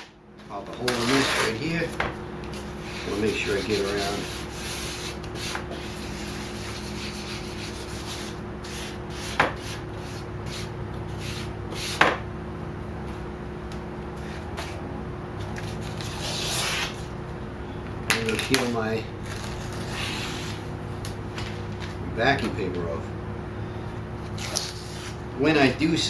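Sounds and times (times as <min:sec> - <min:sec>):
steady hum: 0:00.0 - 0:26.0
vinyl wrap rubbed with squeegee: 0:00.5 - 0:01.9, 0:02.5 - 0:12.0, 0:15.4 - 0:17.1, 0:19.2 - 0:20.7, 0:24.3 - 0:25.2.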